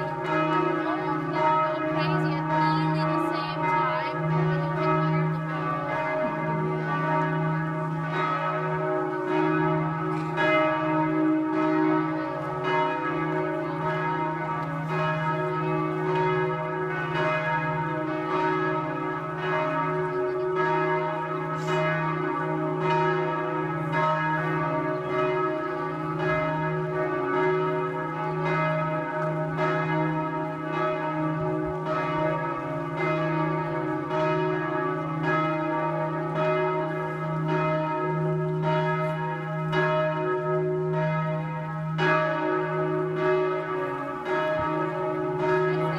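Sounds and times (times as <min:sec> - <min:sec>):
church bells ringing: 0:00.0 - 0:45.9.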